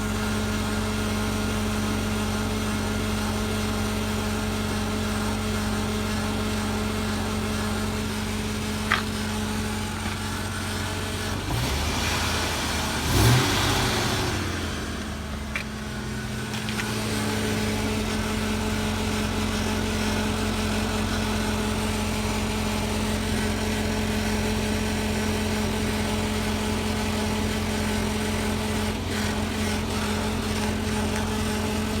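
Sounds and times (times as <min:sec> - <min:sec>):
engine mechanical hum: 0:00.0 - 0:32.0.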